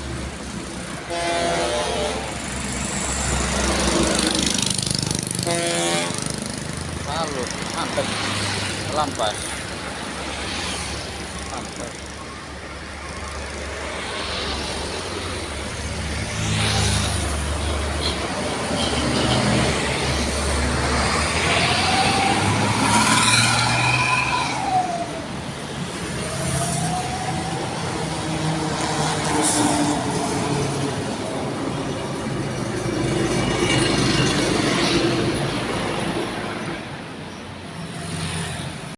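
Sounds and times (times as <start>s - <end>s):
heavy vehicle engine rumbling: 0.0s - 38.9s
vehicle horn gliding tones: 1.0s - 2.8s, 5.4s - 6.4s.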